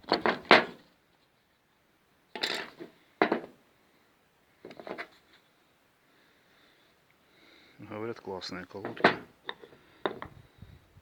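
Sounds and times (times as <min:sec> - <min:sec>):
brake pads clattering and scraping: 0:00.0 - 0:00.9, 0:04.6 - 0:05.4, 0:08.8 - 0:10.4.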